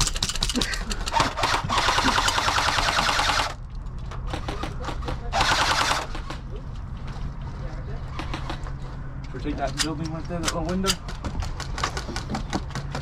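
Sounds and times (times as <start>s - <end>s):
airsoft gun full auto bursts: 1.1s - 3.6s, 5.3s - 6.1s.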